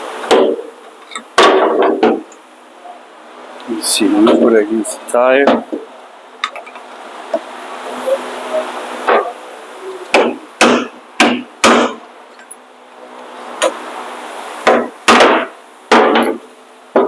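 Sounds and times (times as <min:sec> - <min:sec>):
hammer striking metal: 0:10.1 - 0:12.0.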